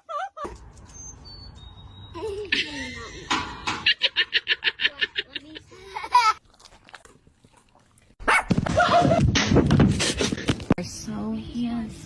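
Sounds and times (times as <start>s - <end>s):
loud dog noise: 8.2s - 9.2s.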